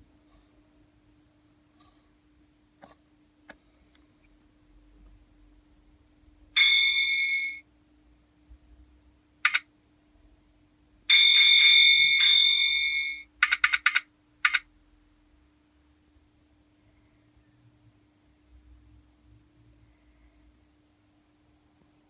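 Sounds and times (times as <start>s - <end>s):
low steady hum: 0.0s - 22.0s
bell ringing: 6.6s - 7.6s, 11.1s - 13.3s.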